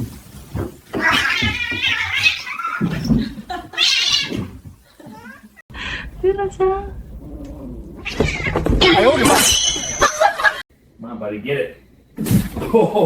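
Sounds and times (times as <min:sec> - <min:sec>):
cat meowing: 0:07.4 - 0:09.2.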